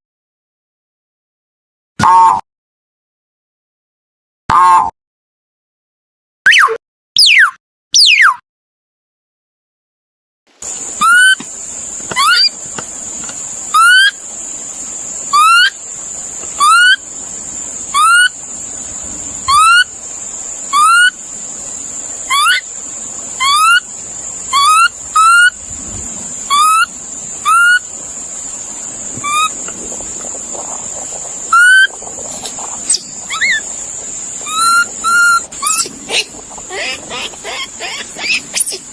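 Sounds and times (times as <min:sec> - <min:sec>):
steady high hiss: 0:10.6 - 0:38.9
bird calling: 0:10.7 - 0:14.4, 0:15.2 - 0:38.9.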